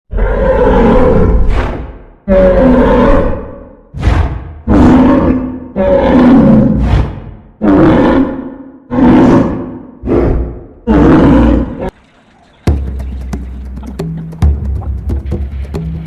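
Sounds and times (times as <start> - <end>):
dinosaur roars: 0.1 - 11.9.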